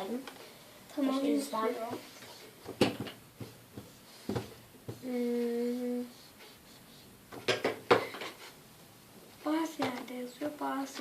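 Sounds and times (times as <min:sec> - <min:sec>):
girl humming a steady note: 0:05.0 - 0:06.3.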